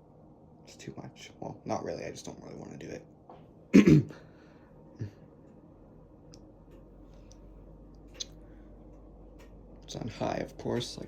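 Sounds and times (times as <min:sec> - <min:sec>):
washing machine drum humming: 0:07.6 - 0:11.0.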